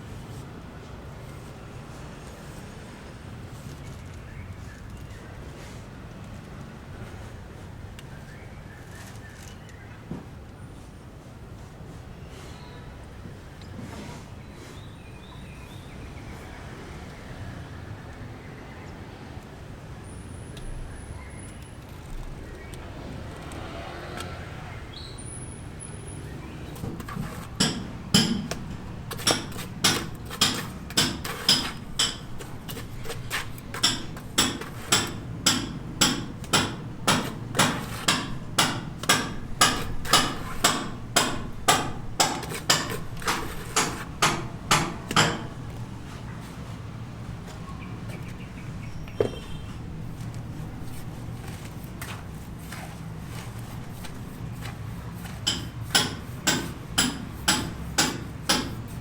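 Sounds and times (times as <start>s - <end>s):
hammer striking: 26.8s - 45.9s, 53.9s - 59.0s.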